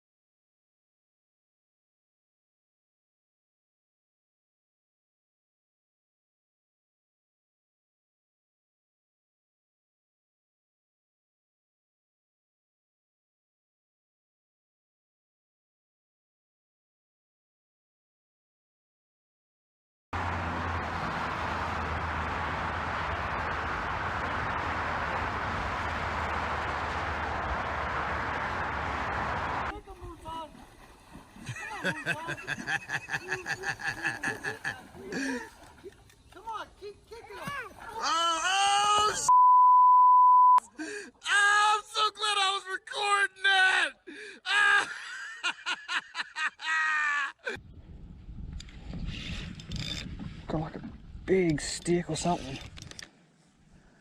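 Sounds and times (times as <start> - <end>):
low engine hum: 20.2 - 29.7
steady rushing noise: 20.2 - 29.8
person laughing: 31.5 - 35.6, 44.2 - 47.6
wind rumble on microphone: 47.6 - 51.8.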